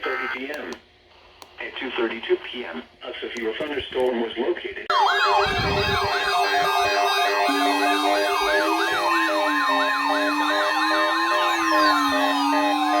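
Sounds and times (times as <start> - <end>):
electronic siren yelping: 4.9 - 13.0
steady high tone: 4.9 - 13.0
synthesized music with pulse: 4.9 - 13.0.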